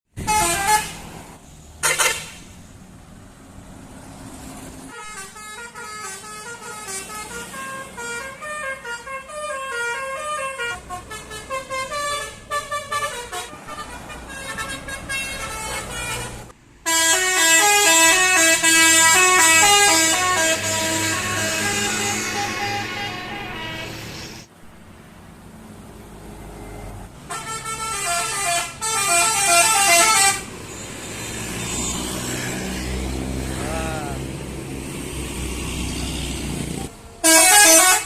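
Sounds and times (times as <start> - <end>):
bus melody horn: 0.2 - 1.1, 1.8 - 2.5, 4.9 - 24.4, 26.7 - 34.2, 36.7 - 38.0.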